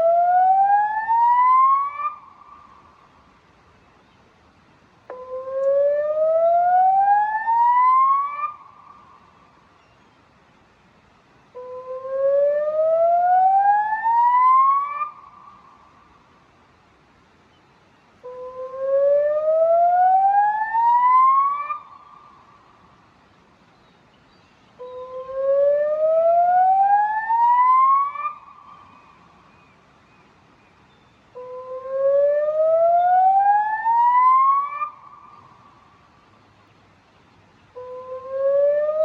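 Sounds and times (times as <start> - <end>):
rising warning siren whoops: 0.0 - 2.2, 5.1 - 8.6, 11.8 - 15.2, 18.5 - 21.8, 25.0 - 28.5, 31.6 - 35.0, 37.9 - 39.0.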